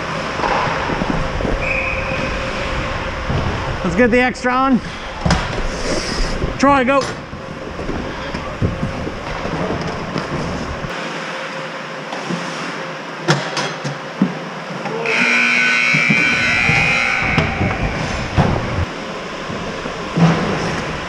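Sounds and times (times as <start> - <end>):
ice rink game horn: 15.0 - 18.4.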